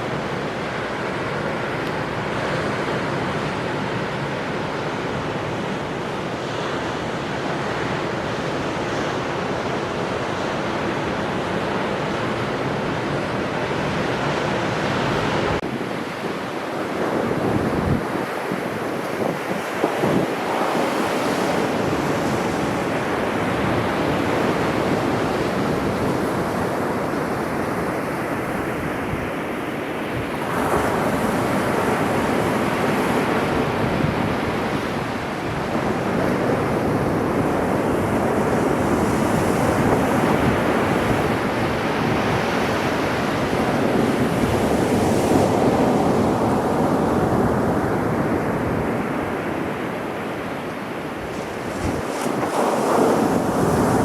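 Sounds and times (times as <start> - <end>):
sea waves breaking on shore: 0.0 - 54.0
wind buffeting microphone: 15.1 - 54.0.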